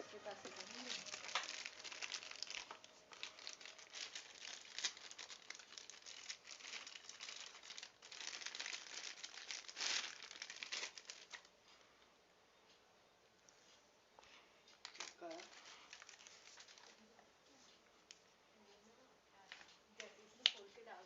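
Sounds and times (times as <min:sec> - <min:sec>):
plastic packaging crinkling: 0:00.0 - 0:11.5, 0:14.8 - 0:17.1.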